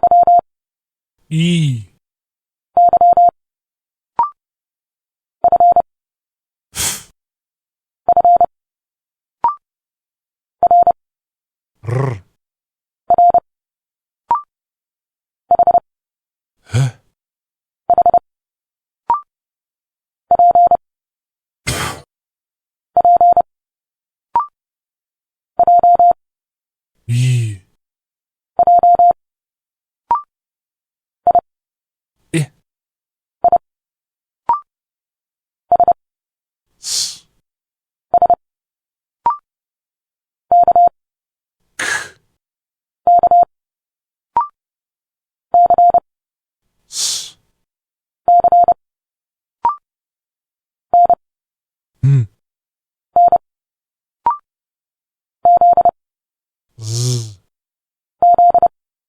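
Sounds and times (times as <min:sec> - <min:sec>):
spoken letter sounds: 0:01.3 - 0:02.0, 0:11.8 - 0:12.2, 0:21.7 - 0:22.0, 0:27.1 - 0:27.6, 0:32.3 - 0:32.6, 0:36.8 - 0:37.2, 0:41.8 - 0:42.2, 0:46.9 - 0:47.3, 0:56.8 - 0:57.4
morse code beeps: 0:43.1 - 0:43.5, 0:45.6 - 0:46.0, 0:48.3 - 0:48.8, 0:58.2 - 0:58.7.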